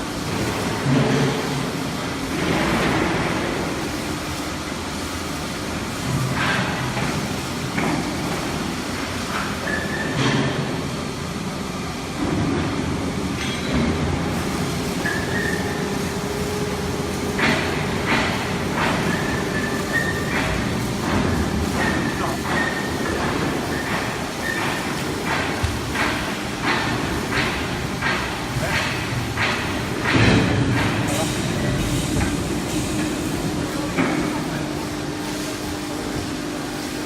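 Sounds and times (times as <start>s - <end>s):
sharp metallic clanks: 13.4s - 13.9s.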